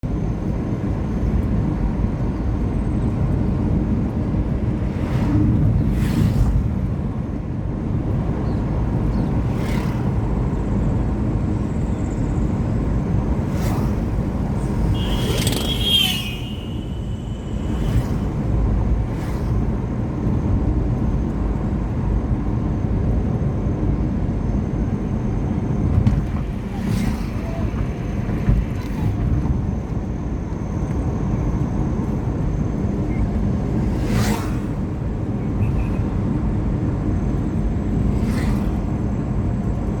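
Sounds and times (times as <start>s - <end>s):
car driving low rumble: 0.0s - 40.0s
brief high-pitched tone: 14.9s - 17.8s.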